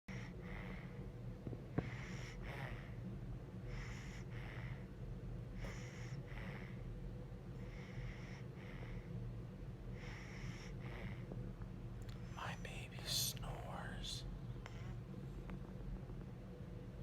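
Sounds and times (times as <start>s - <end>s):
baby snoring softly: 0.1s - 1.0s, 1.7s - 3.0s, 3.7s - 4.9s, 5.6s - 6.9s, 7.6s - 9.1s, 10.0s - 11.4s
steady low hum: 0.1s - 17.0s.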